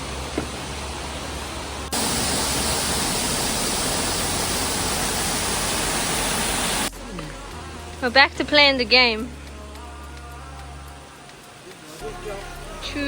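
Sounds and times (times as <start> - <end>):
creek water rushing: 0.0 - 6.9, 10.9 - 12.8
falling water rushing: 0.0 - 6.9.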